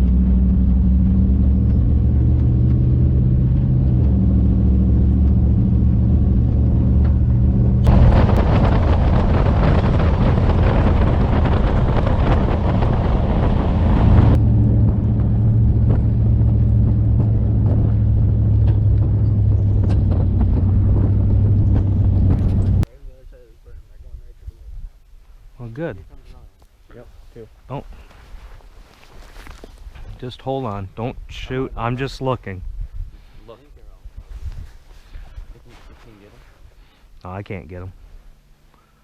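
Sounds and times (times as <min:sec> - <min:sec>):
vehicle engine droning: 0:00.0 - 0:22.9
loud rushing noise: 0:06.4 - 0:22.8.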